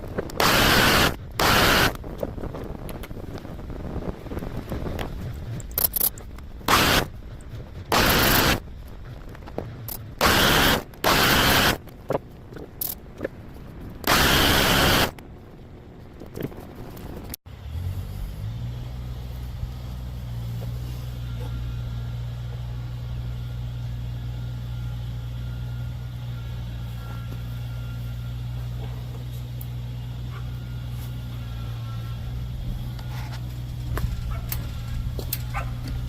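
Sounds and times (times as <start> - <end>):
mower engine running: 0.4 - 2.0, 4.5 - 11.9, 14.0 - 15.2.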